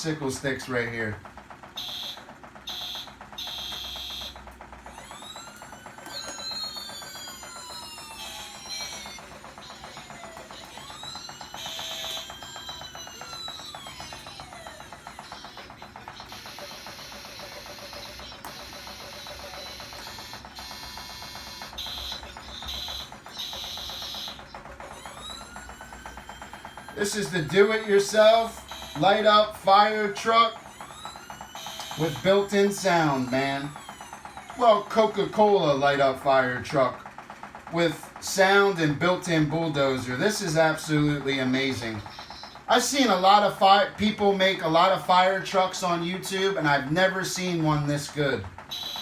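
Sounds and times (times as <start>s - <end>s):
fast even clicking: 0.0s - 49.0s
electronic siren tones: 1.7s - 37.1s, 37.8s - 47.9s, 48.6s - 49.0s
high buzzing beeps: 1.8s - 35.4s, 48.7s - 49.0s.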